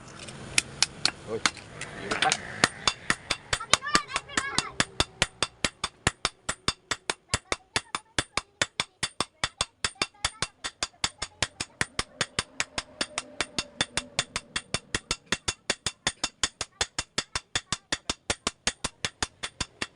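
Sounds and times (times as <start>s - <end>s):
hammer striking metal: 0.6s - 19.9s.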